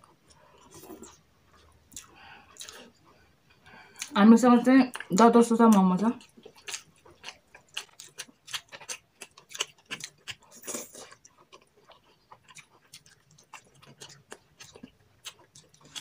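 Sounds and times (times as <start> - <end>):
wet chewing clicks and smacks: 6.2 - 16.0.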